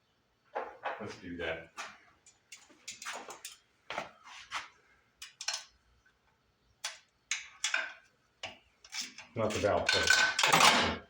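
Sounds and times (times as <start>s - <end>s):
metal tools clanking on metal: 8.8s - 11.0s.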